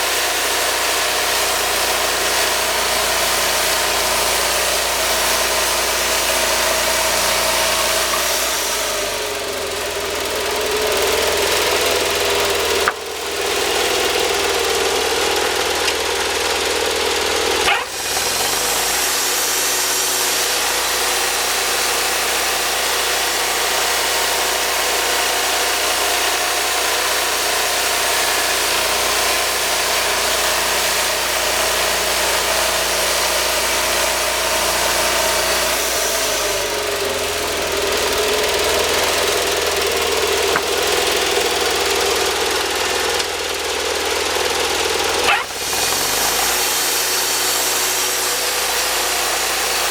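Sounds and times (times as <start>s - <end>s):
sawmill engine running: 0.0s - 49.9s
sawmill click: 39.5s - 41.7s, 45.2s - 47.2s.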